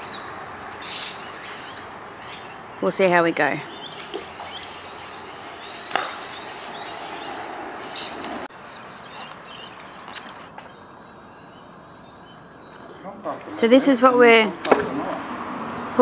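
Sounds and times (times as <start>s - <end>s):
outdoor background noise: 0.0s - 16.0s
faint bird chirps: 3.7s - 13.1s.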